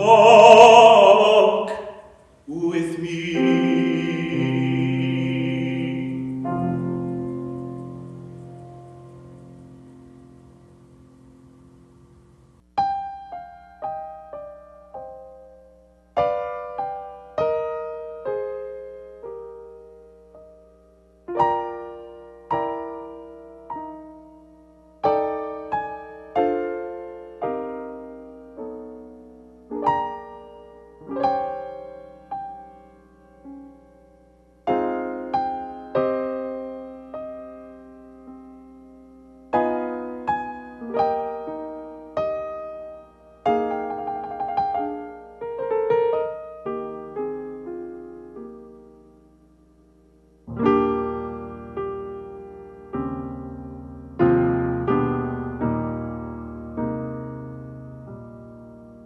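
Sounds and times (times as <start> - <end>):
faint low hum: 0.0 - 17.4
slow piano chords: 0.0 - 59.0.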